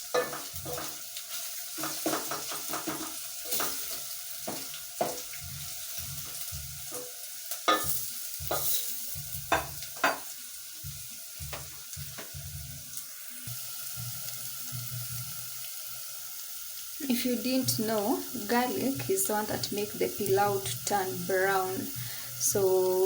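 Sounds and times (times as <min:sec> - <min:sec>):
onions sizzling in oil: 0:00.0 - 0:23.0
spoon knocking against pot: 0:00.1 - 0:00.9, 0:07.7 - 0:10.3.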